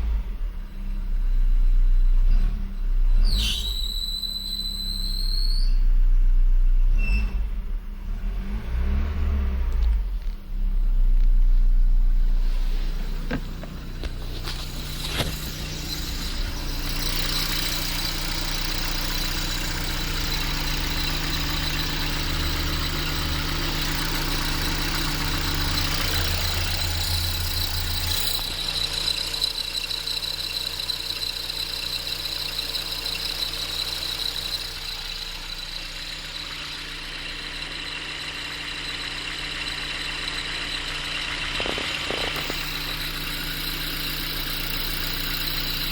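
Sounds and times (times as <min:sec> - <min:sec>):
car engine revving and idling: 0:00.0 - 0:03.9, 0:05.7 - 0:45.9
alternator belt whine: 0:11.0 - 0:45.9.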